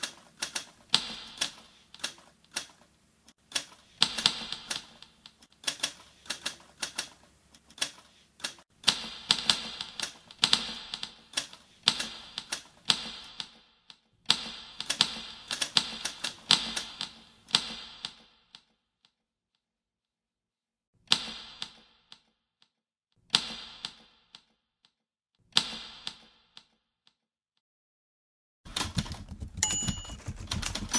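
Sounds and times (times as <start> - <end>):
typewriter keys clicking: 0.0 - 2.8, 3.5 - 13.5, 14.3 - 18.2, 28.7 - 30.9.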